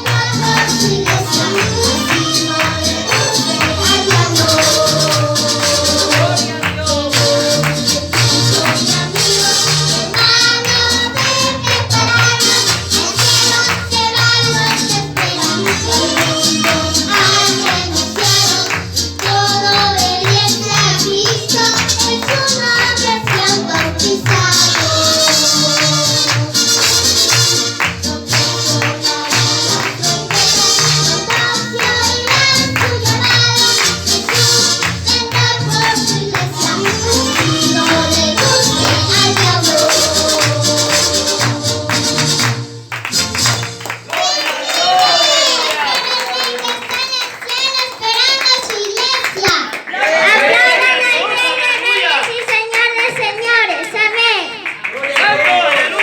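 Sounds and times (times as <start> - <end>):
voices singing together: 0.0 - 42.8, 44.1 - 47.0
bass line: 0.0 - 43.7.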